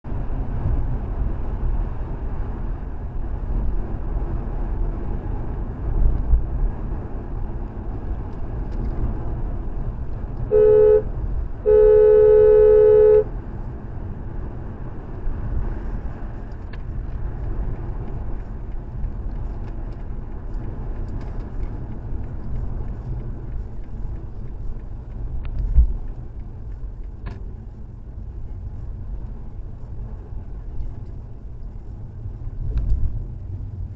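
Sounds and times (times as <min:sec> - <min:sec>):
car road and engine rumble: 0:00.0 - 0:33.9
car horn honking: 0:10.5 - 0:13.3.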